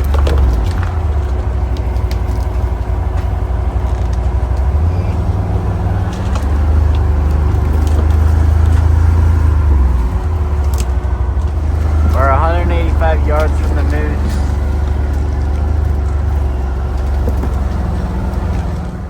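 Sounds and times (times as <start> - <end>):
vehicle engine droning: 0.0 - 19.0
sticks snapping against vehicle: 10.6 - 11.6.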